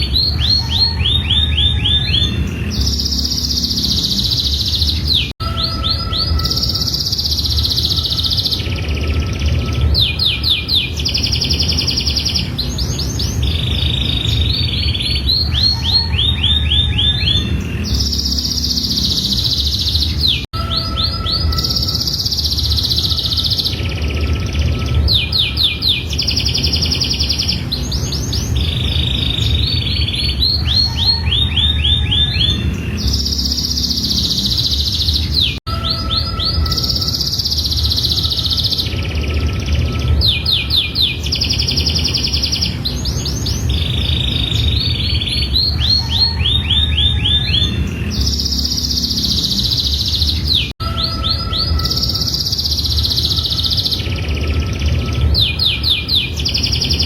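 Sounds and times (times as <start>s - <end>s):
steady low hum: 0.0s - 20.5s, 21.1s - 35.6s, 47.1s - 50.8s
canary singing trills: 0.0s - 57.0s.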